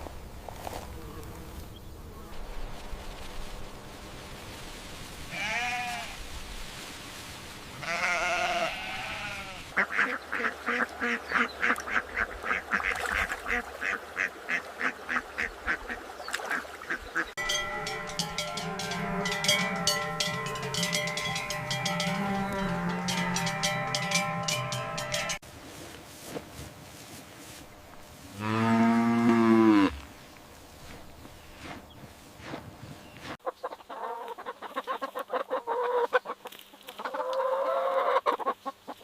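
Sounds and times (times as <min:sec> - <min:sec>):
drawn-out animal calls: 0:17.2 - 0:25.4
bright metallic strokes: 0:17.4 - 0:25.4
ringing tones together: 0:17.4 - 0:25.4.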